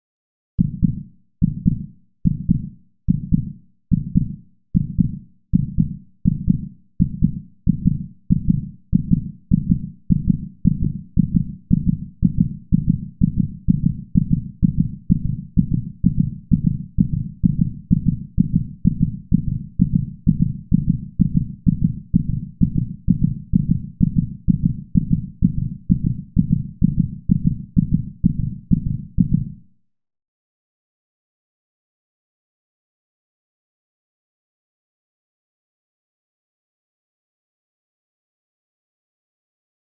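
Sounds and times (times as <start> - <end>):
muffled heartbeat: 0.6 - 29.6.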